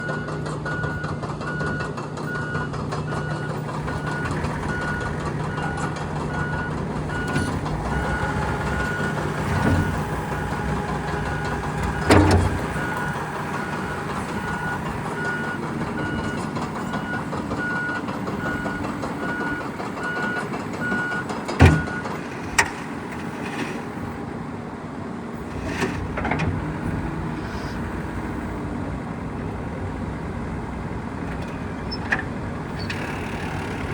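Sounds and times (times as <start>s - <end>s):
backup alarm beeping: 0.0s - 22.1s
diesel engine running: 0.0s - 33.9s.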